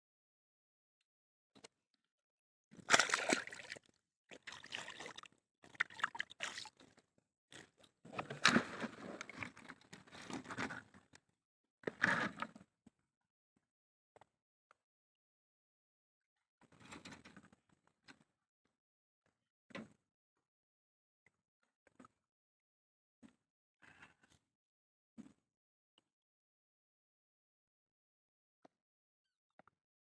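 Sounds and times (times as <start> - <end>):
water splashing and sloshing: 2.8 - 7.0.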